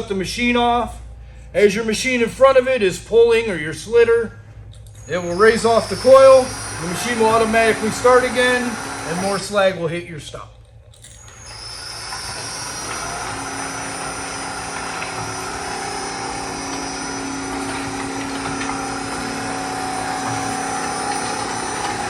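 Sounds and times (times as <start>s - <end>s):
mechanical running noise: 4.1s - 22.0s
electric motor whine: 5.0s - 9.6s, 11.2s - 22.0s.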